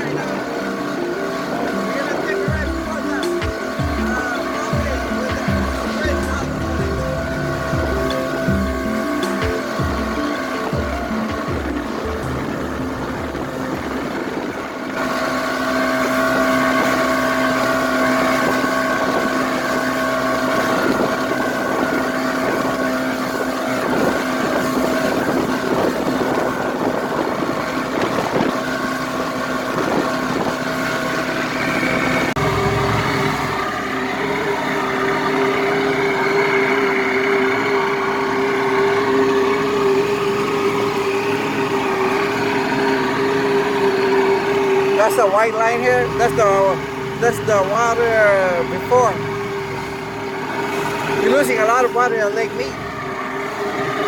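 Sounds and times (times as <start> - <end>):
boat engine running: 0.0 - 54.0
wind noise on microphone: 10.7 - 33.7.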